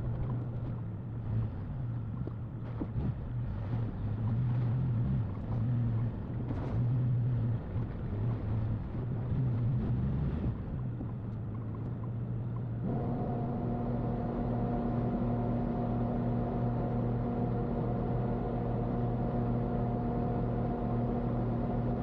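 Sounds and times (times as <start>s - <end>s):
vehicle engine and road rumble: 0.0s - 22.0s.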